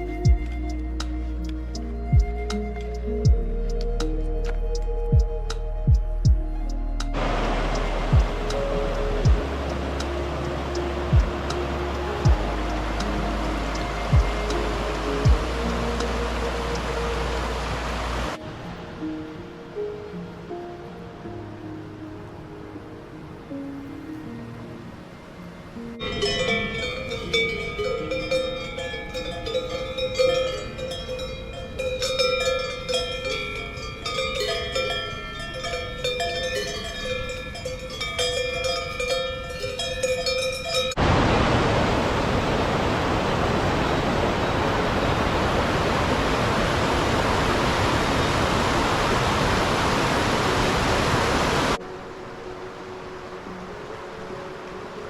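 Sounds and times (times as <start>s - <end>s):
rushing water: 0.0s - 5.8s, 6.5s - 55.0s
cowbells clanking: 26.0s - 41.0s.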